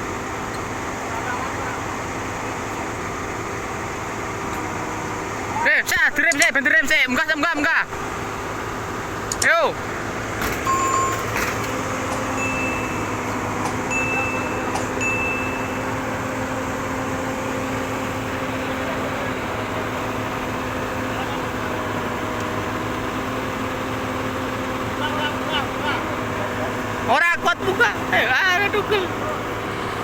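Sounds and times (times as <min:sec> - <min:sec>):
heavy diesel engine running: 0:00.0 - 0:30.0
high-pitched ringing tones: 0:10.6 - 0:17.8.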